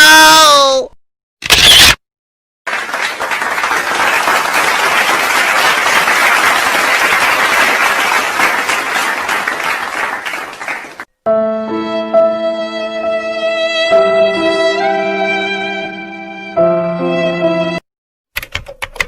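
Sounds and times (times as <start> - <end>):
crowd applause: 2.7 - 11.1.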